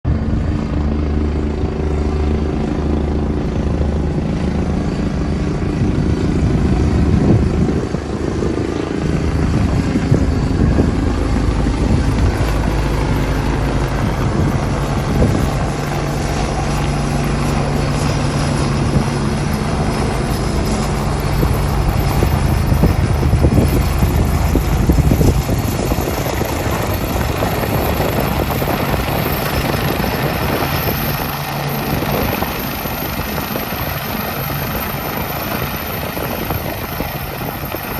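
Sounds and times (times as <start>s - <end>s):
helicopter rotor beat: 0.0s - 37.9s.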